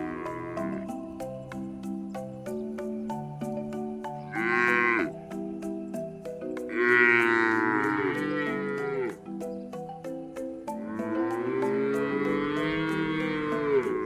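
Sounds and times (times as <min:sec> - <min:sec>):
cow mooing: 0:00.0 - 0:01.0, 0:04.3 - 0:05.2, 0:06.6 - 0:09.2, 0:10.8 - 0:14.0
background music with ticking beat: 0:00.0 - 0:14.0.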